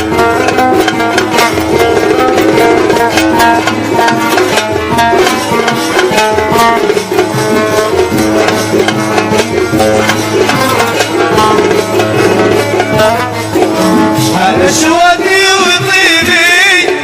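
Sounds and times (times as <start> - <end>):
hand drum rhythm: 0.0 - 17.0
plucked-string melody: 0.0 - 17.0.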